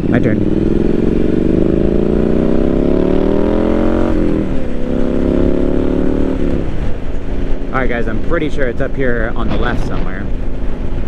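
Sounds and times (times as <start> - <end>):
motorcycle engine accelerating: 0.0 - 7.8.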